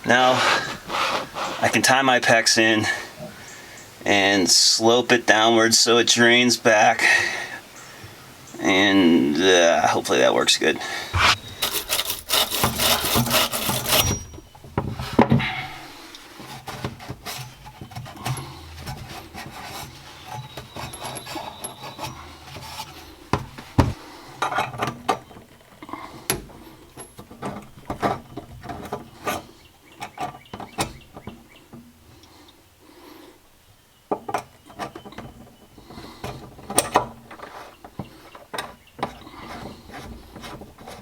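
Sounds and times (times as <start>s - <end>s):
rapid rasping strokes: 11.1s - 14.3s.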